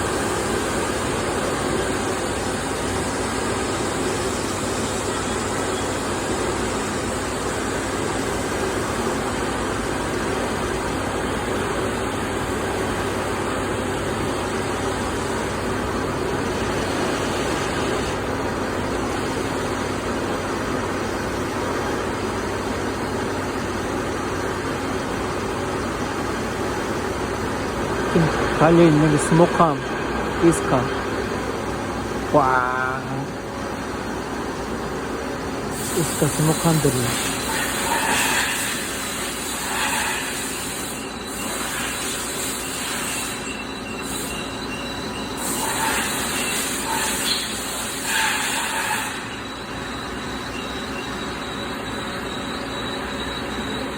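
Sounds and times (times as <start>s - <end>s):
lathe whirring hiss: 26.8s - 32.4s, 33.2s - 53.9s.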